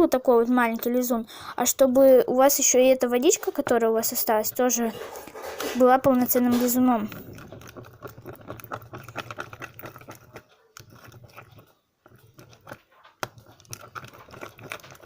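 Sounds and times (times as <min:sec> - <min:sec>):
slime stirred with a stick: 0:00.0 - 0:15.0.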